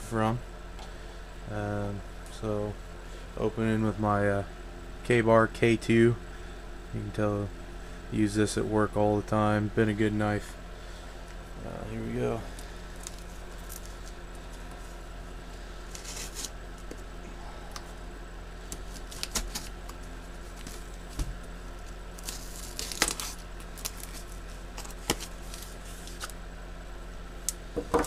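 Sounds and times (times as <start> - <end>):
steady low hum: 0.0 - 28.0
knife cutting cardboard and tape: 15.9 - 16.6, 18.7 - 19.7.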